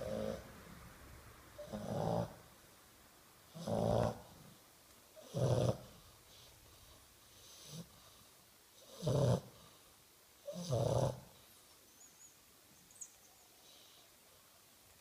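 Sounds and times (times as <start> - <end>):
dog snoring loudly: 0.0 - 0.5, 1.6 - 2.5, 3.5 - 4.5, 5.2 - 6.5, 7.4 - 8.0, 8.8 - 9.7, 10.4 - 11.4.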